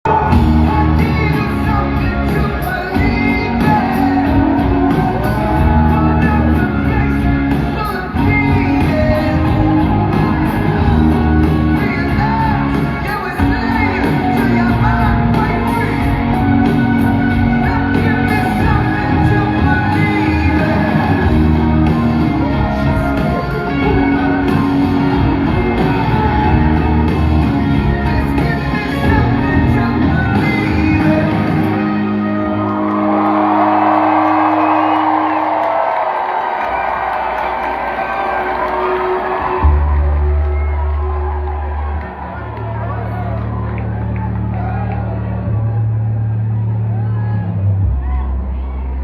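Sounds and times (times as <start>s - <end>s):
rock music with singing: 0.0s - 49.0s.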